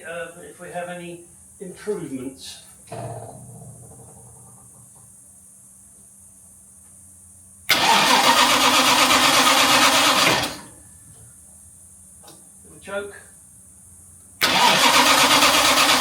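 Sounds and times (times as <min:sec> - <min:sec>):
engine cranking on starter motor: 0:07.7 - 0:10.8, 0:14.4 - 0:16.0.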